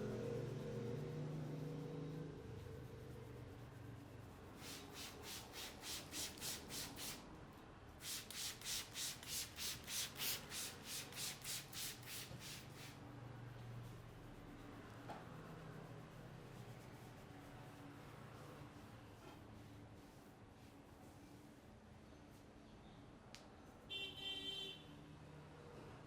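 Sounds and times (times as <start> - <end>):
hands rubbing over hair: 4.6 - 7.2, 8.0 - 13.0.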